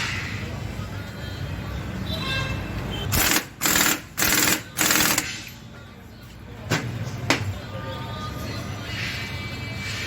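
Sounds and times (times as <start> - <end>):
rapid mechanical rattle: 3.1 - 5.4.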